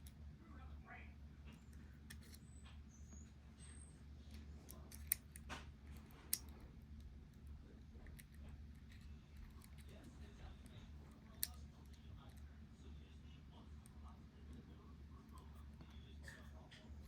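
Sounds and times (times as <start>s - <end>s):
steady low hum: 0.0s - 17.0s
small metallic clicks: 4.7s - 5.5s.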